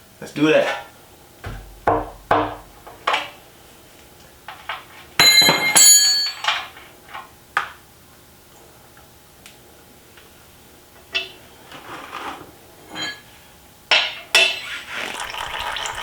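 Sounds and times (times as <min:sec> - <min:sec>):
metallic clattering and ringing: 0:12.9 - 0:13.2
metal tools clanking: 0:12.9 - 0:13.3.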